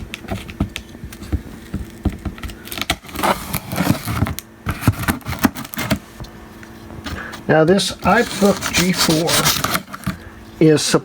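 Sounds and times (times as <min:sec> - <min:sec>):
scraping and rubbing on cardboard: 0:07.2 - 0:10.1
utility knife cutting cardboard: 0:08.0 - 0:10.0.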